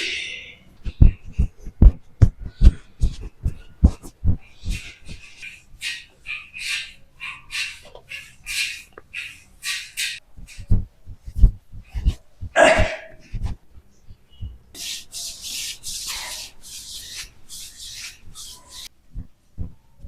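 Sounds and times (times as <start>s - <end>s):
hands rubbing swishes: 0.8s - 6.0s, 9.6s - 13.9s, 14.7s - 18.9s.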